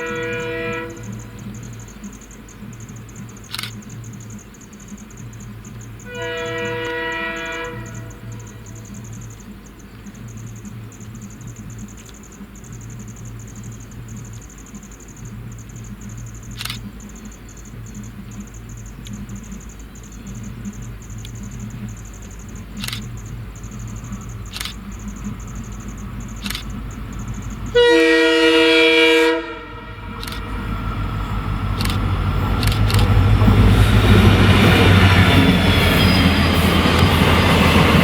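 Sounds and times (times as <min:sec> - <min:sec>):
locomotive horn blast: 0:00.0 - 0:01.4, 0:06.0 - 0:08.4, 0:27.7 - 0:38.0
sharp clicks: 0:01.0 - 0:27.7, 0:30.1 - 0:30.5, 0:31.7 - 0:33.2, 0:36.8 - 0:37.2.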